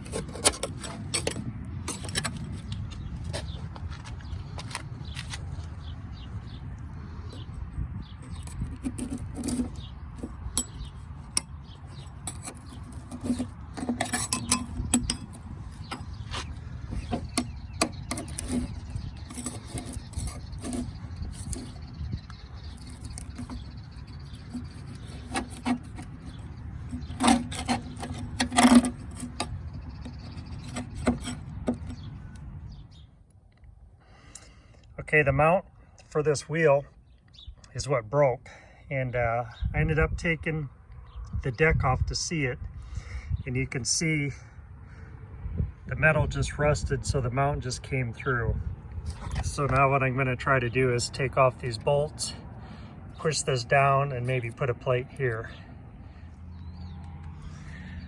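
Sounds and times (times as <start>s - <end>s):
metal parts clanking: 0.0s - 3.5s, 8.3s - 21.8s, 22.6s - 29.6s
steady low rumble: 0.0s - 25.2s.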